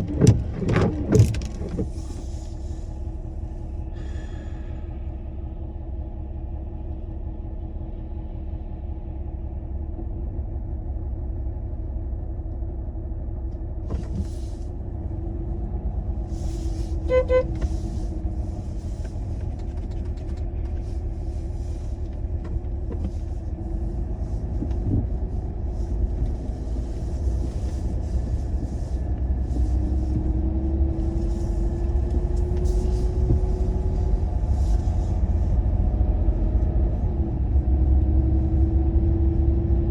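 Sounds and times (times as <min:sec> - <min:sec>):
car engine running: 0:00.0 - 0:39.9
road rumble: 0:00.0 - 0:39.9.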